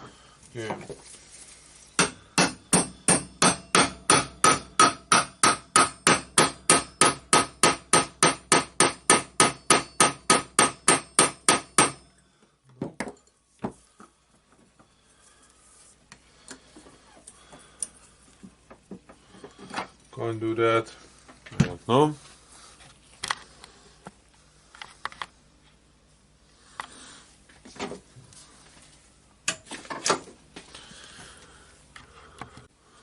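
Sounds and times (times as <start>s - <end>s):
hammer striking metal: 2.0s - 12.1s.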